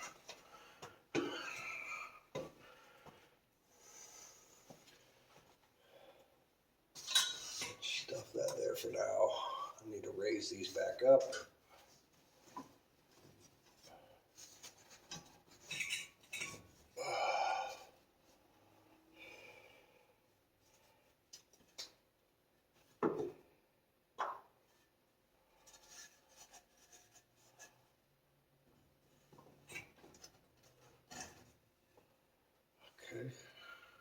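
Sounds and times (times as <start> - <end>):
light clinks and rubbing: 7.0 - 8.6, 14.4 - 16.7.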